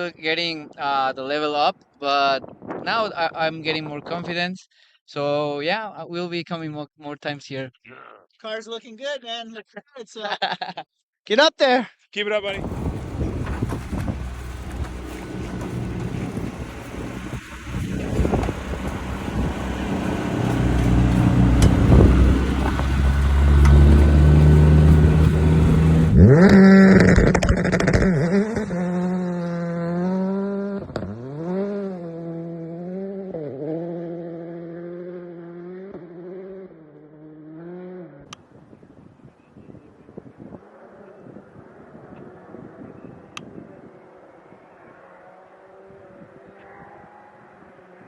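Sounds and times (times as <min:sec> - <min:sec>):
wind noise: 0:02.0 - 0:04.5, 0:12.4 - 0:28.7, 0:38.4 - 0:45.1
car engine revving: 0:12.5 - 0:38.4, 0:44.0 - 0:48.0.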